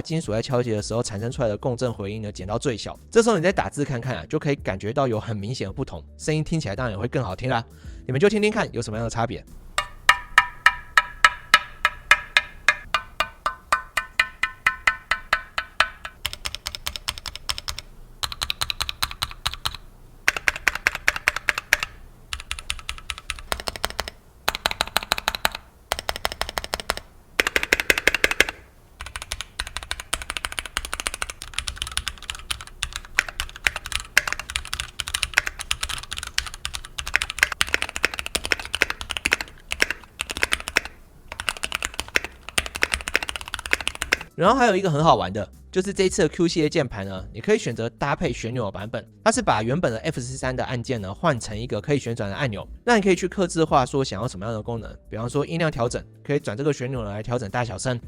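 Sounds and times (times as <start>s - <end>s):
mechanical keyboard typing: 9.5s - 44.3s.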